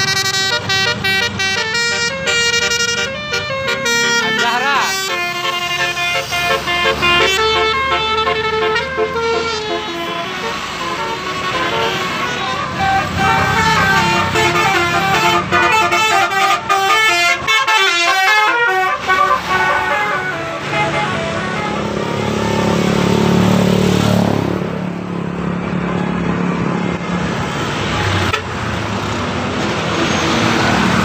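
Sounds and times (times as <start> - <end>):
musical air horns: 0.0 - 22.9, 28.2 - 28.5
bus engine running: 0.0 - 31.0.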